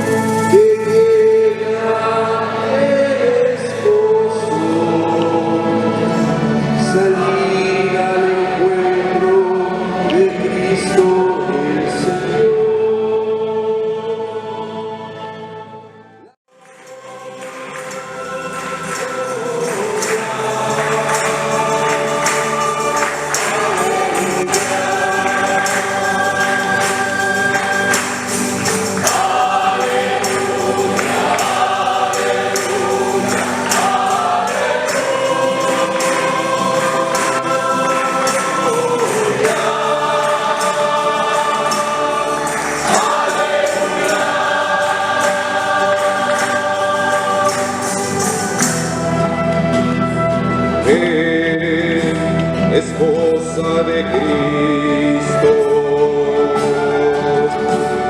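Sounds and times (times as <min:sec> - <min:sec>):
shaken tambourine: 0:00.0 - 0:01.8, 0:16.5 - 0:51.2
choir singing a hymn: 0:00.0 - 0:58.0.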